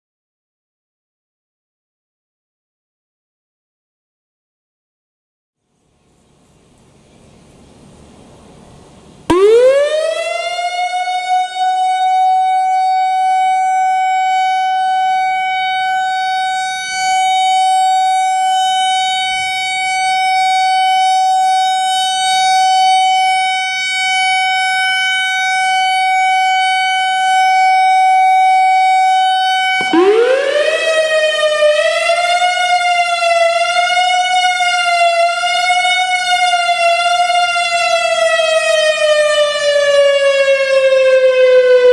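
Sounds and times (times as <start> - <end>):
electronic warning siren wailing: 9.3 - 41.9.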